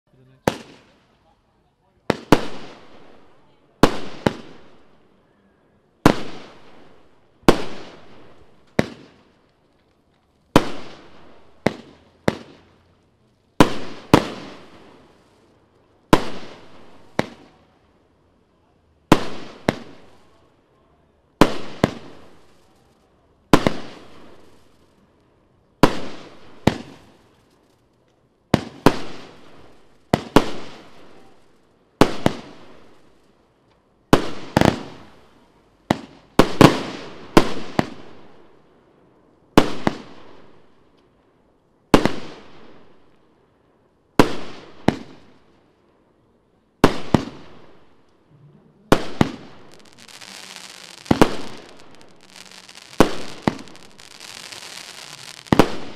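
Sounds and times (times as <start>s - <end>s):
fireworks bangs: 0.3s - 1.1s, 2.0s - 5.0s, 6.0s - 9.4s, 10.5s - 12.8s, 13.6s - 15.4s, 16.1s - 17.7s, 19.1s - 20.5s, 21.4s - 25.0s, 25.8s - 27.6s, 28.5s - 33.3s, 34.1s - 38.5s, 44.2s - 45.6s, 46.8s - 55.9s.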